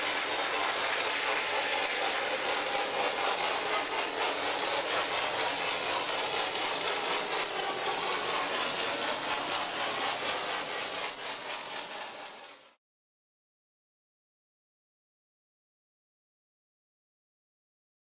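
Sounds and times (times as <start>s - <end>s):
spraying machine hiss and rattle: 0.0s - 12.8s.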